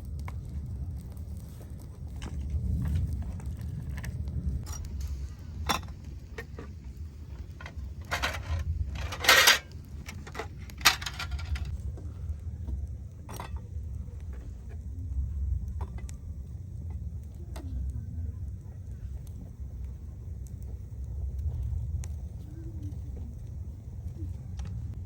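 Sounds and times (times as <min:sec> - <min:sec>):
steady low rumble: 0:00.0 - 0:25.0
dishes and utensils clinking: 0:07.6 - 0:11.7.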